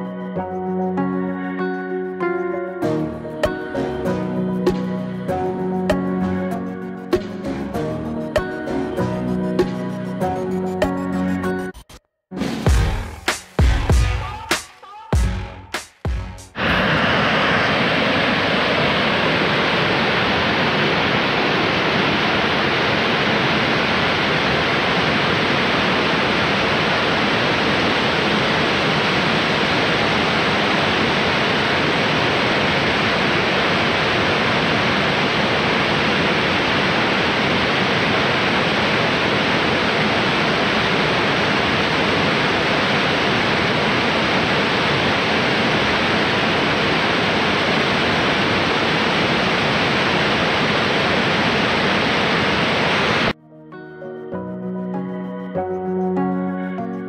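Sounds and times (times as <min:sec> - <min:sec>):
waterfall roaring: 0:16.6 - 0:53.4.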